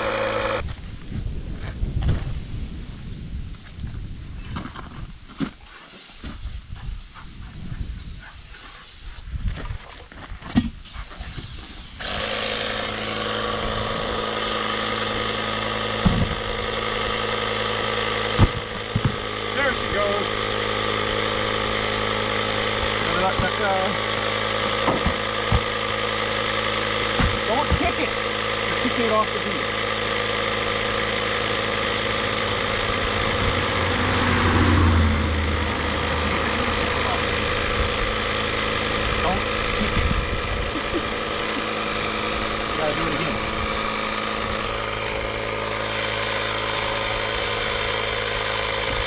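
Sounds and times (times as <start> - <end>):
engine idling: 0.0 - 0.7, 11.0 - 49.0
air compressor running: 0.0 - 0.8, 5.6 - 9.3, 10.8 - 49.0.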